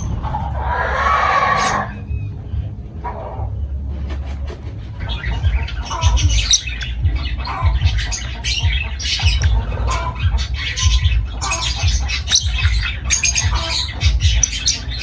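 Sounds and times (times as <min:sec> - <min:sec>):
lovebirds chattering: 0:05.0 - 0:15.0.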